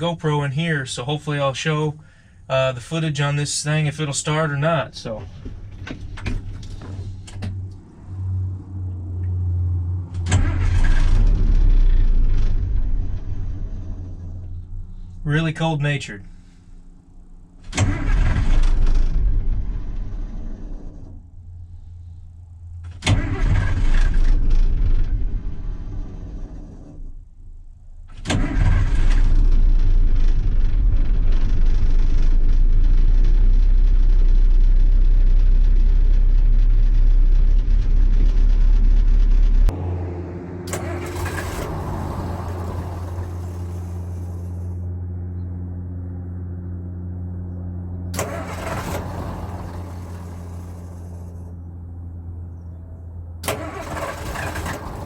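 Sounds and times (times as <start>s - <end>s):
truck engine revving: 4.0s - 15.4s, 16.3s - 22.2s, 22.8s - 27.2s, 28.1s - 55.0s
starter cranking: 48.2s - 51.2s, 53.4s - 55.0s.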